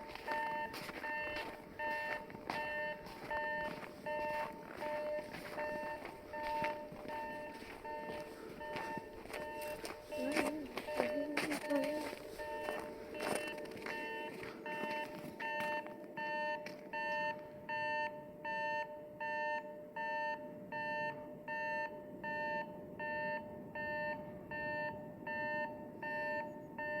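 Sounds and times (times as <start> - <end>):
level crossing bell ringing: 0.0 - 15.9.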